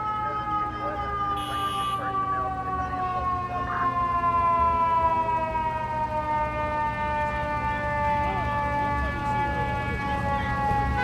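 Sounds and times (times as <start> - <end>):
fire truck siren winding down: 0.0 - 11.0
truck engine rumble: 0.0 - 11.0.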